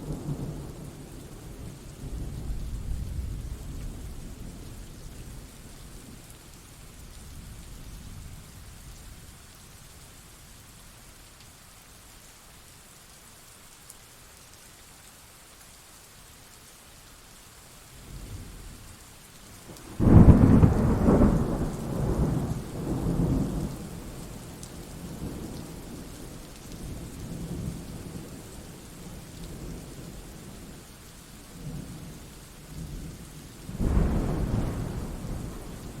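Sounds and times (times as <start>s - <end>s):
steady rain: 0.0s - 36.0s
thunder clap and rumbles: 19.9s - 23.8s, 33.7s - 36.0s.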